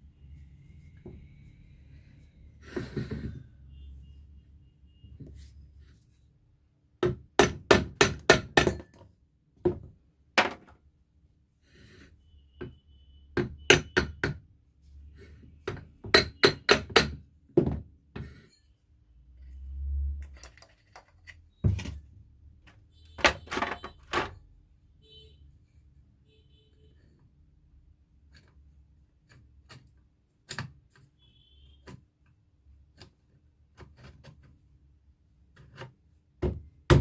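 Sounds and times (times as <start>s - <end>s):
hammer tapping: 15.7s - 17.2s.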